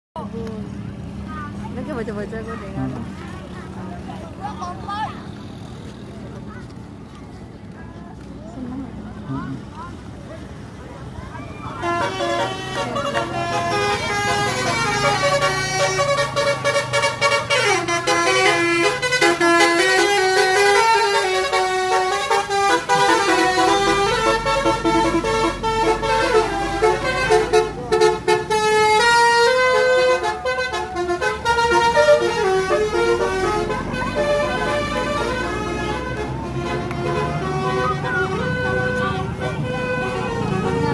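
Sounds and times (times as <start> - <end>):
musical air horns playing runs: 11.6 - 40.9.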